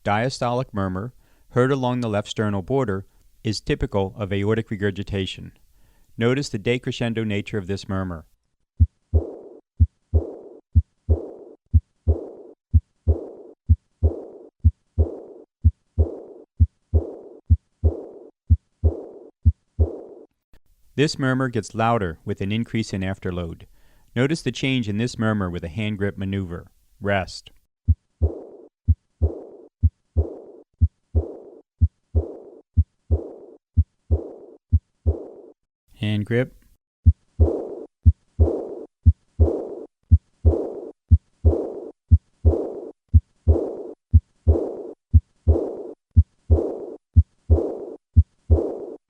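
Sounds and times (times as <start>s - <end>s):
blowing heart murmur: 8.8s - 20.2s, 27.9s - 35.5s, 37.0s - 39.8s, 40.4s - 46.8s, 47.5s - 47.8s, 48.5s - 49.0s
heartbeat: 8.8s - 20.2s, 27.9s - 35.6s, 37.0s - 49.0s.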